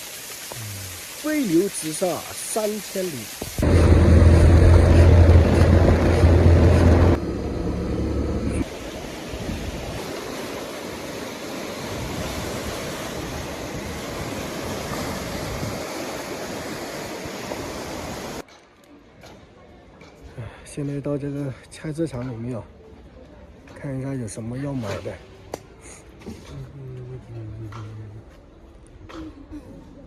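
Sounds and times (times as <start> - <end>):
water rushing: 0.0 - 18.4
deep rumble: 3.6 - 8.6.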